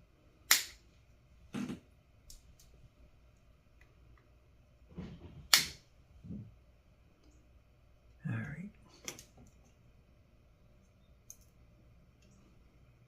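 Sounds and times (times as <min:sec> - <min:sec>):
sharp snap: 0:00.5 - 0:00.8, 0:05.5 - 0:05.8.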